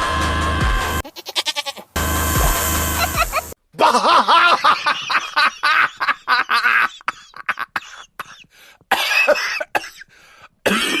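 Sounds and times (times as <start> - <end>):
person making cough-like sounds: 7.1 - 11.0.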